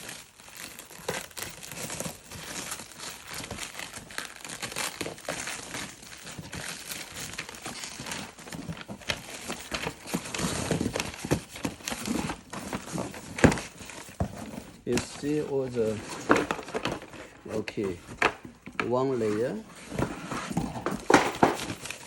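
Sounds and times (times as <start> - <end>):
packaging tearing: 0.0 - 14.1
packaging crinkling: 0.0 - 22.0.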